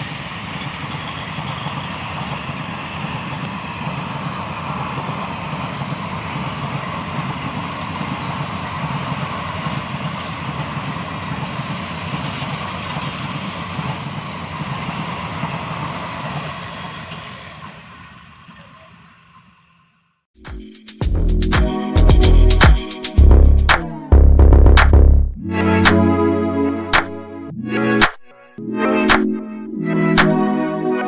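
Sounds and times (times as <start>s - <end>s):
train rushing past: 0.0s - 18.2s.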